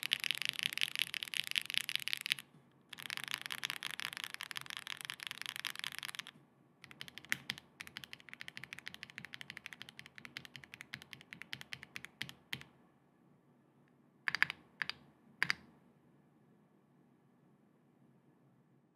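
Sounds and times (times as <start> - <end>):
mechanical keyboard typing: 0.0 - 12.7, 14.3 - 15.6.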